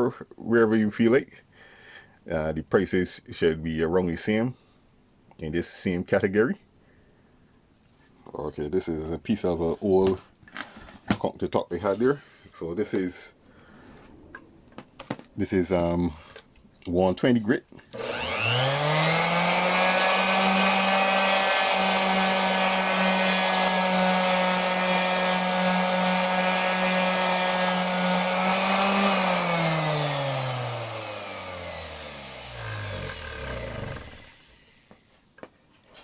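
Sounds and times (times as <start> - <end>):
motor winding down whine: 18.0 - 34.9
orbital sander running: 18.0 - 34.9.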